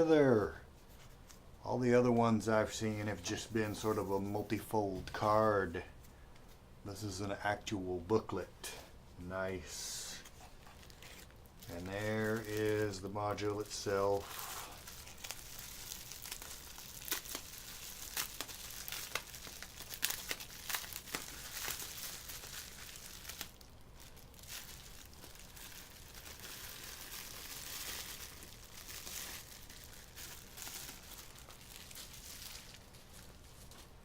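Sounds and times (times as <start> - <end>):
packaging crinkling and rustling: 10.2 - 34.0.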